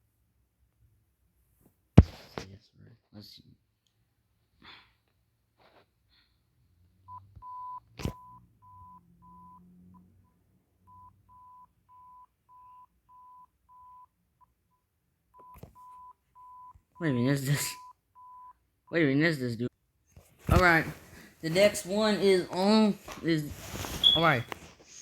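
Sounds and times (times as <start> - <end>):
short alert beeps: 24.0 - 24.5.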